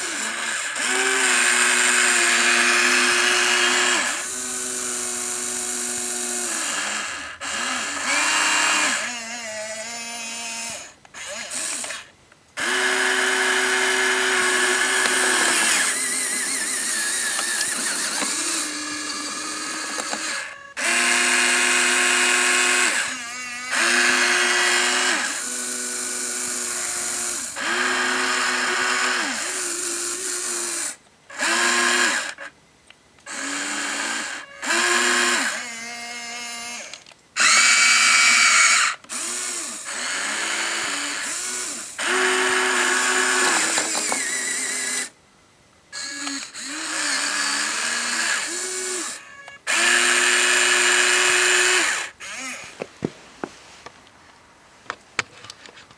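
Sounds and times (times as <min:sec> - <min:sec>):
electric gear motors whining: 0:00.0 - 0:32.5, 0:33.2 - 0:45.2, 0:46.0 - 0:52.9.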